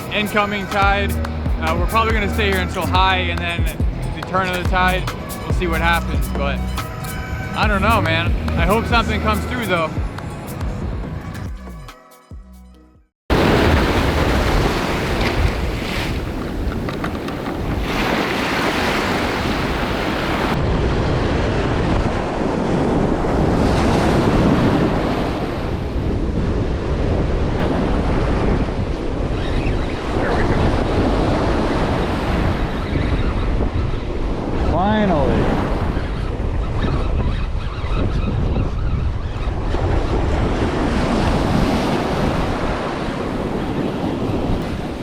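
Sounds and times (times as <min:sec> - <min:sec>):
surf washing onto beach: 0:00.0 - 0:05.9, 0:13.3 - 0:26.1, 0:40.0 - 0:45.0
wind buffeting microphone: 0:00.0 - 0:11.8, 0:13.3 - 0:45.0.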